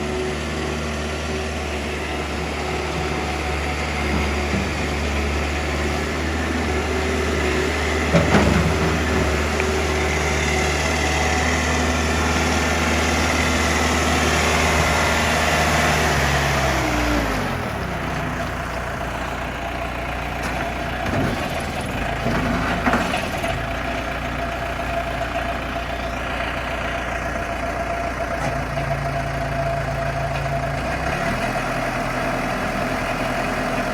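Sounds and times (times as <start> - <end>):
diesel engine running: 0.0 - 33.9
metal clunk: 7.3 - 9.8.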